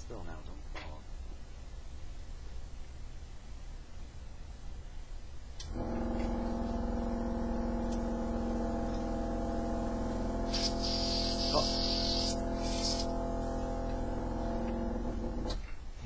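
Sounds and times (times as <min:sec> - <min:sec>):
steady motor hum: 0:05.6 - 0:15.7
hissing blast of air: 0:08.1 - 0:14.3.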